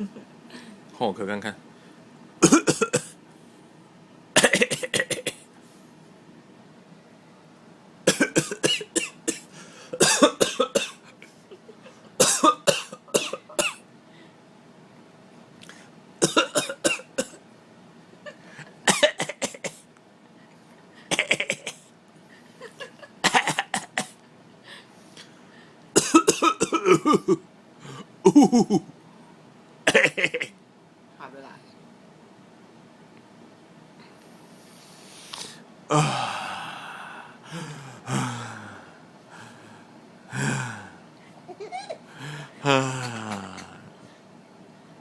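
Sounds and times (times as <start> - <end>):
adult fake coughing: 2.4 - 3.2, 4.4 - 5.4, 8.1 - 11.0, 12.2 - 13.8, 16.2 - 17.4, 18.9 - 19.8, 21.1 - 21.9, 23.2 - 24.2, 26.0 - 27.4, 29.9 - 30.6, 41.6 - 43.9.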